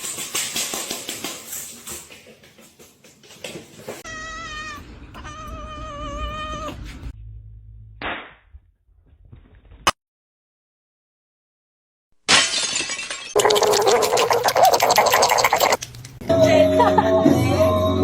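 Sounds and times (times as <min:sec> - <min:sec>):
cat yowling: 0:04.0 - 0:06.9.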